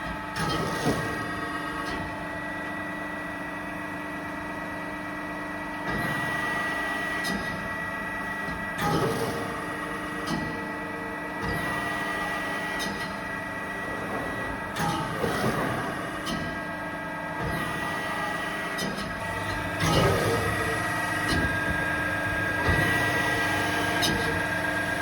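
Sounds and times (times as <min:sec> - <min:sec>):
press brake humming and whining: 0:11.6 - 0:25.0
machine knocks: 0:19.4 - 0:24.5.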